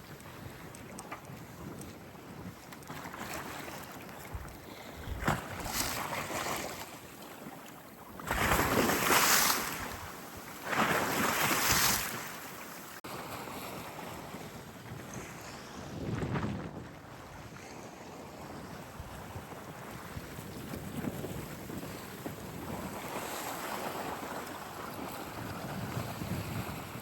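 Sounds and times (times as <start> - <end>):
wind buffeting microphone: 0.0 - 12.2, 13.5 - 27.0
sea waves washing in: 3.6 - 14.0.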